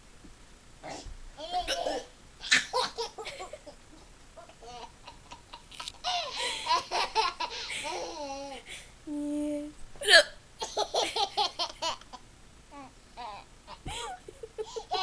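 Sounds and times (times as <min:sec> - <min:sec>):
woman hiccuping: 0:10.0 - 0:10.4
toddler laughing: 0:13.2 - 0:15.0.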